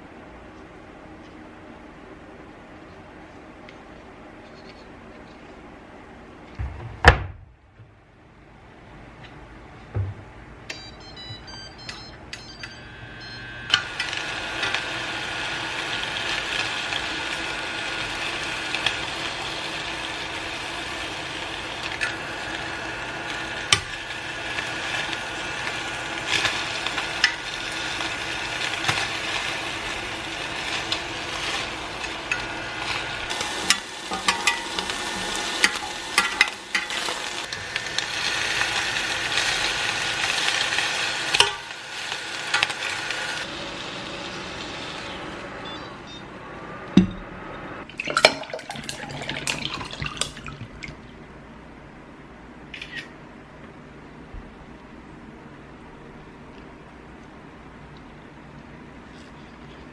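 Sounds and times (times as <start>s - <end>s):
food sizzling in a pan: 12.9s - 45.7s.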